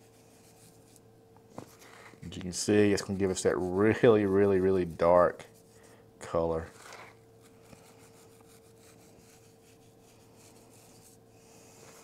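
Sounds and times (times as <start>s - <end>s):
steady low hum: 0.0s - 12.0s
scratchy rustling of seasoning: 1.8s - 4.9s, 6.6s - 12.0s.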